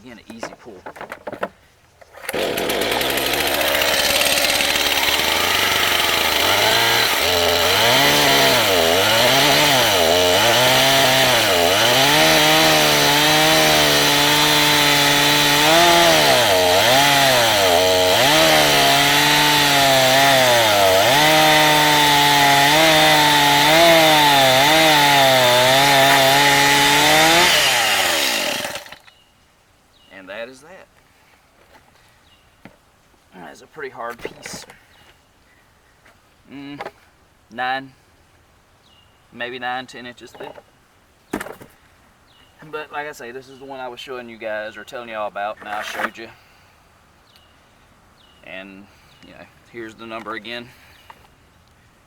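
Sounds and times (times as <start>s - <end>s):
chainsaw revving and cutting wood: 2.2s - 29.1s.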